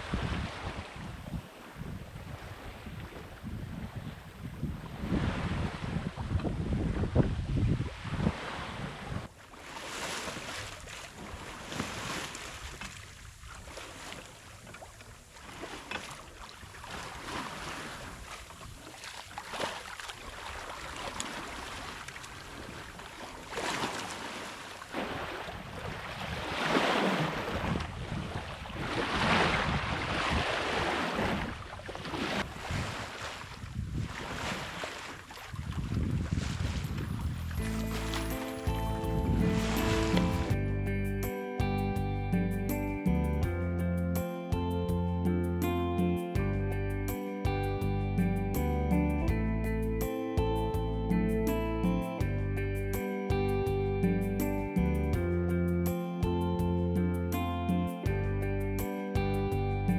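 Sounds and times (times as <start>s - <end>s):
wind rumbling on microphone: 0.0s - 9.4s, 25.0s - 55.6s
water rushing past sailboat: 0.0s - 40.8s.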